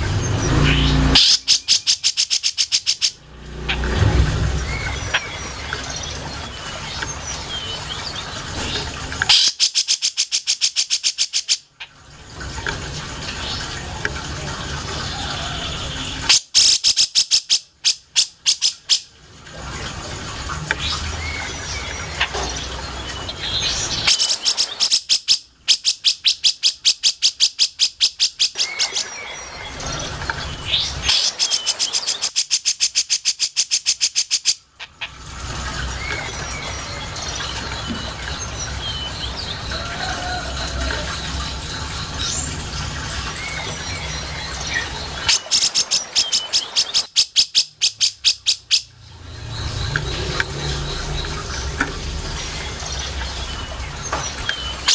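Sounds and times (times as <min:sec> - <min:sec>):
bird song fast high notes: 0:00.1 - 0:06.9.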